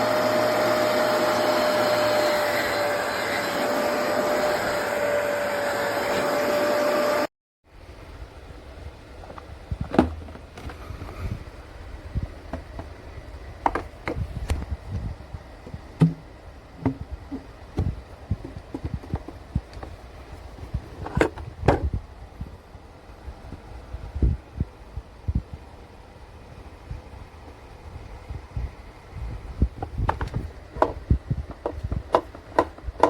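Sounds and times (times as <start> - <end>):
irregular clicks and knocks: 29.8 - 33.0.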